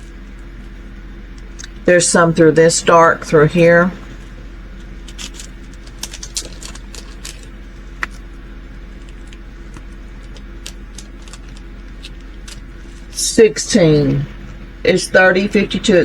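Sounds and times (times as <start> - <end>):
steady low hum: 0.0 - 16.0
plastic bags clicking: 4.8 - 13.2.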